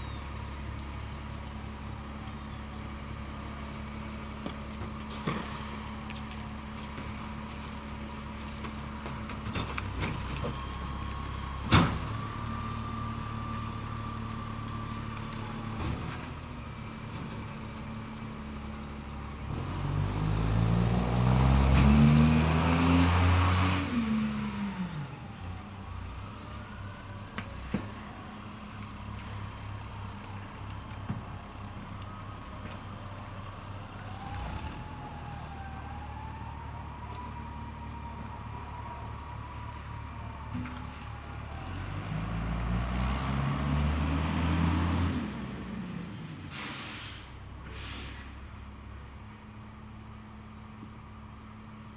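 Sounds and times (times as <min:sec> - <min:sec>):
garbage truck engine: 0:00.0 - 0:51.9
high squeal: 0:24.6 - 0:27.5, 0:45.7 - 0:47.6.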